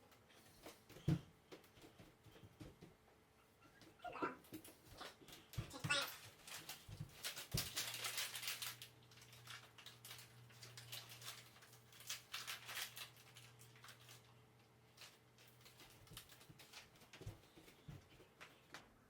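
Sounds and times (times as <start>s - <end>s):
low steady hum: 0.0s - 19.0s
cats scratching in cardboard box: 4.5s - 14.3s, 14.9s - 18.7s.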